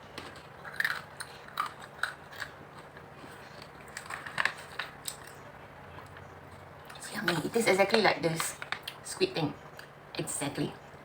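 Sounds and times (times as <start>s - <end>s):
person chewing crunchy snack: 0.0s - 5.4s.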